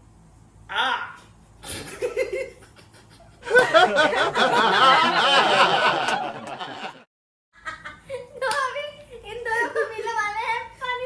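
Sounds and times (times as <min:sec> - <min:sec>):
people laughing and snickering: 0:01.8 - 0:07.0.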